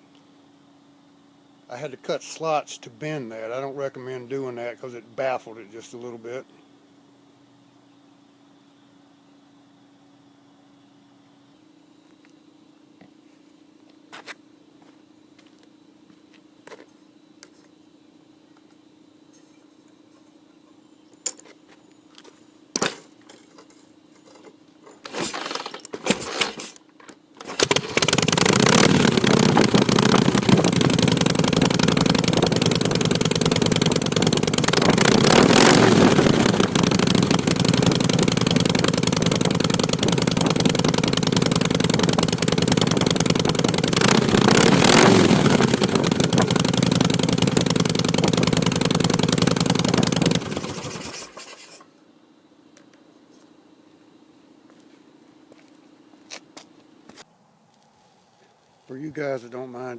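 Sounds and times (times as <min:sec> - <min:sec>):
motorcycle engine running: 0:27.4 - 0:51.5
motorcycle engine revving: 0:27.4 - 0:51.6.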